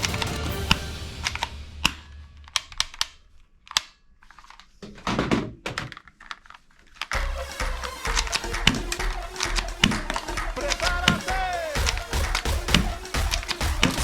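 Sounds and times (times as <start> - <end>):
background music: 0.0 - 2.8, 7.1 - 14.0
plastic toy parts clicking: 2.4 - 4.8, 5.6 - 7.2.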